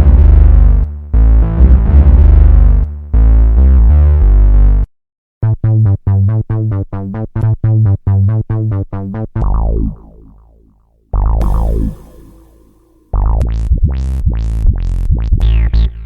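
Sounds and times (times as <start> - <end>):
synthesizer music: 11.2 - 13.5.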